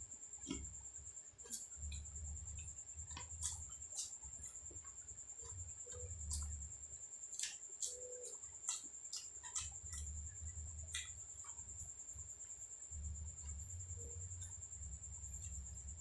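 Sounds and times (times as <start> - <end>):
person chewing: 5.4 - 6.6, 7.3 - 10.2.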